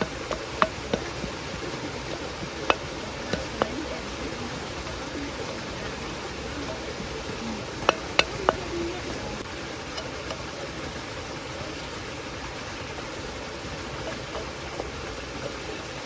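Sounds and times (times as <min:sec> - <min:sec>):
stream rushing: 0:00.0 - 0:16.0.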